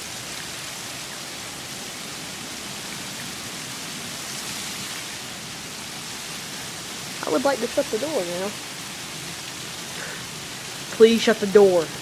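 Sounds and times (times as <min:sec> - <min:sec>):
rain pouring: 0:00.0 - 0:12.0.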